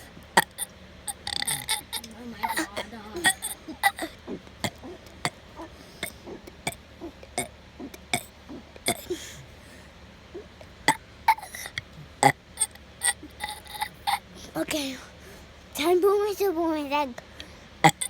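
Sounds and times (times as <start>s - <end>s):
boy burping: 0.4s - 6.8s, 7.4s - 9.4s, 10.9s - 12.4s, 13.0s - 14.8s.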